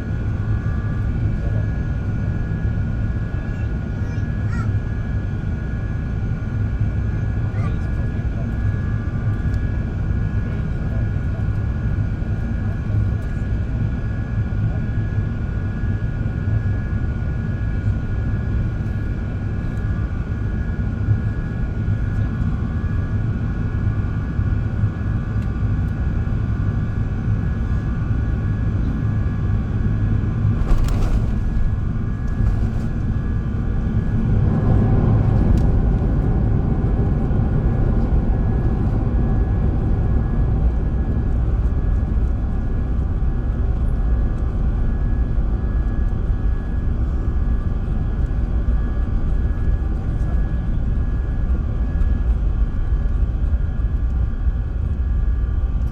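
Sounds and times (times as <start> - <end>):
jet engine rumble: 0.0 - 55.9
engine whine: 25.1 - 39.4.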